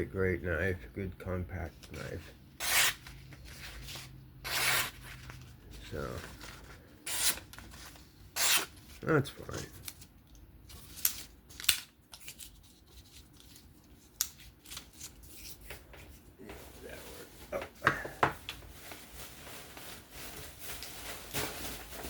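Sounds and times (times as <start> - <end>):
knife scraping: 2.6 - 3.1, 3.8 - 5.0, 7.1 - 7.4, 8.4 - 8.7.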